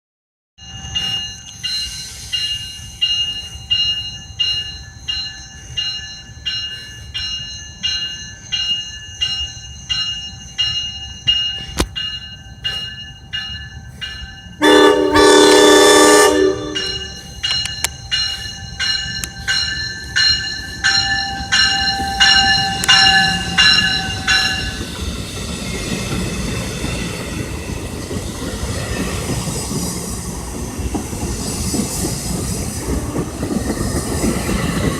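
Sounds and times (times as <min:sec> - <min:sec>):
bell ringing: 0:00.6 - 0:25.0
train wheel and rail noise: 0:00.6 - 0:34.9
train air horn blast: 0:14.6 - 0:17.1.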